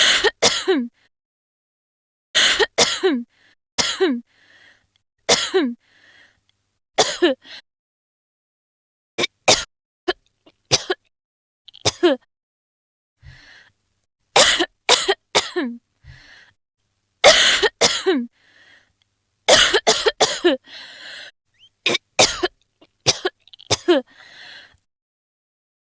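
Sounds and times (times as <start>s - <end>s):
woman coughing: 0.0s - 0.9s, 2.4s - 3.2s, 3.8s - 4.2s, 5.3s - 5.8s, 7.0s - 7.4s, 10.7s - 11.0s, 11.9s - 12.2s, 14.4s - 15.8s, 17.2s - 18.3s, 19.5s - 20.6s, 21.9s - 22.5s, 23.1s - 24.1s.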